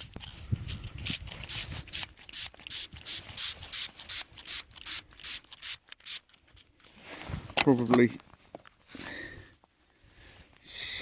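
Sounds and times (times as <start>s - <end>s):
spray bottle squirting: 0.0s - 6.7s.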